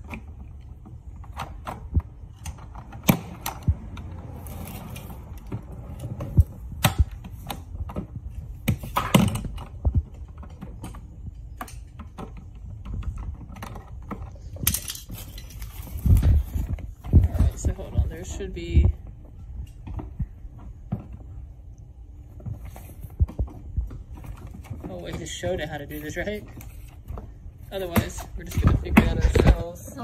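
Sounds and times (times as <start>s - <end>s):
plastic parts clicking and knocking: 6.3s - 21.4s.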